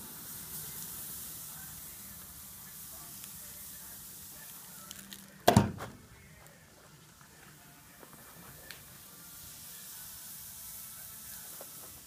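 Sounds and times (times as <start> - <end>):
compound hissing on hot steel: 0.0 - 5.4, 8.3 - 12.0.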